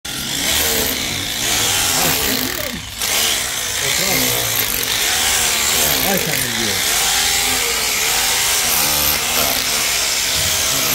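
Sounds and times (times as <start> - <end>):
sawmill machinery running: 0.1 - 10.9.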